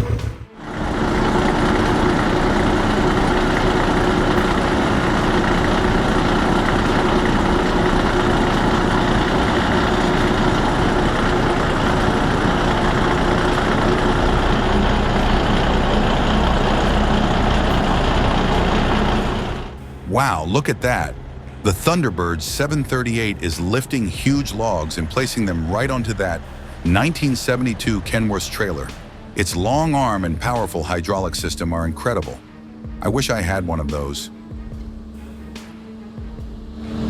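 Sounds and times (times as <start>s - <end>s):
heavy diesel engine running: 0.0s - 37.0s.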